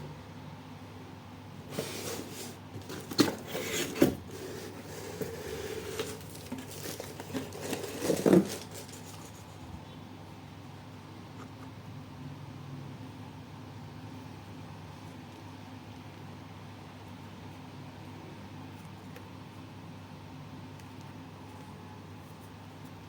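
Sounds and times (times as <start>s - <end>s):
box and packing rustling: 1.6s - 9.7s.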